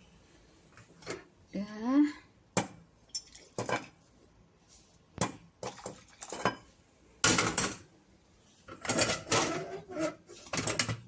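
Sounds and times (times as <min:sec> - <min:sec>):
kitchenware clinking: 0:03.1 - 0:04.0, 0:05.6 - 0:07.9, 0:08.7 - 0:11.0.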